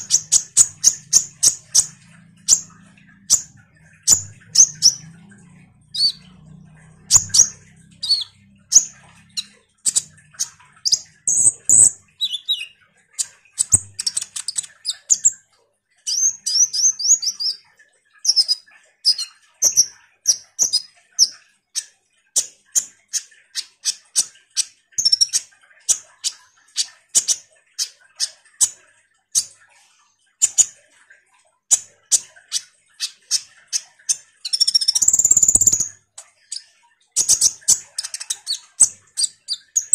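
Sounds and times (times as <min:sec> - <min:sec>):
bird chattering song: 0:00.0 - 0:15.4, 0:32.1 - 0:39.9.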